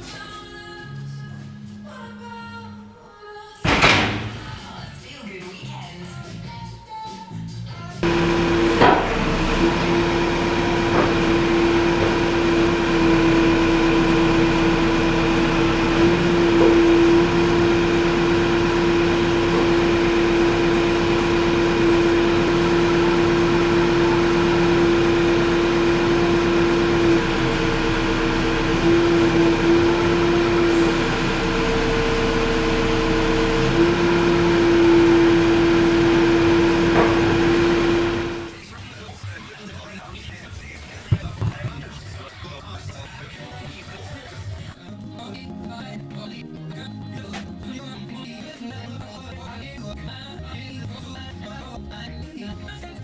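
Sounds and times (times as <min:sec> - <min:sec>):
backhoe loader engine running: 0:08.0 - 0:38.6.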